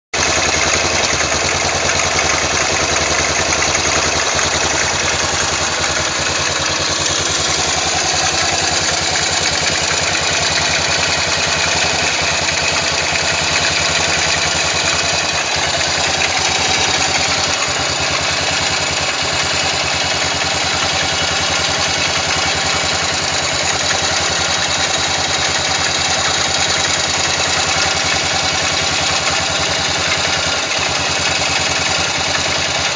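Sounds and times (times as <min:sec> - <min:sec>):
motorcycle engine idling: 0:00.2 - 0:32.9
strange engine noise: 0:00.2 - 0:32.9.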